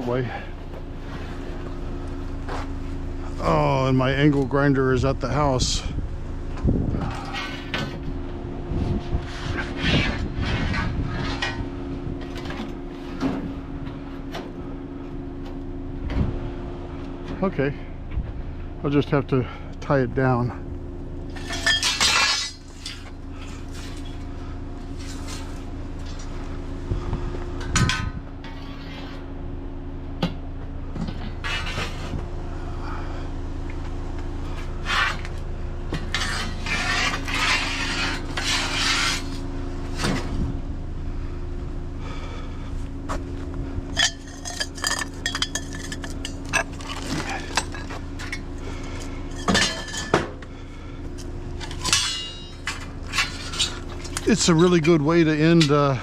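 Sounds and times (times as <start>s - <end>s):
steady hum: 0.0s - 56.0s
scrap metal clanking: 21.3s - 24.2s, 36.0s - 40.4s, 43.9s - 50.4s, 51.6s - 56.0s.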